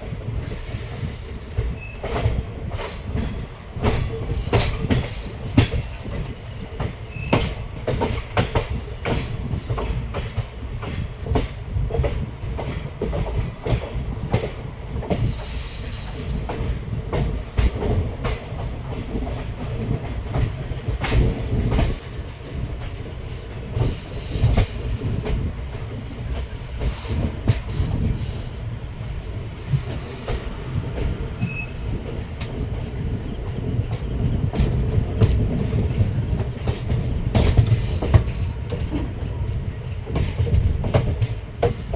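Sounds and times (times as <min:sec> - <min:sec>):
train coaches rumbling: 0:00.0 - 0:41.9
high wheel squeals: 0:30.8 - 0:31.8.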